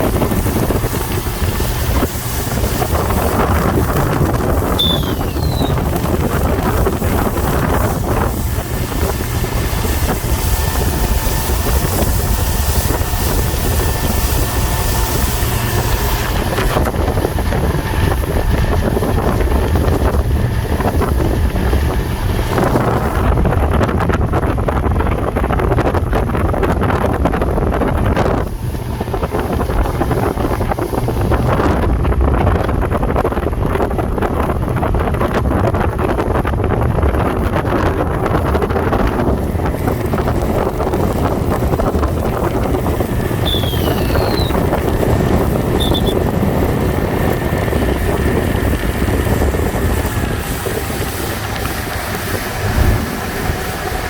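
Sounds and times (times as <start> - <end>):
motorboat engine running: 0.0 - 54.0
wind buffeting microphone: 0.0 - 54.0
faint engine whine: 39.2 - 54.0.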